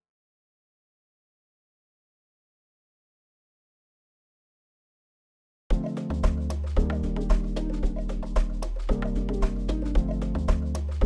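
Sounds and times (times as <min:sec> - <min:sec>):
kick drum: 0:05.7 - 0:10.6
busy percussion: 0:05.7 - 0:11.0
sustained bass and chords: 0:05.7 - 0:11.0.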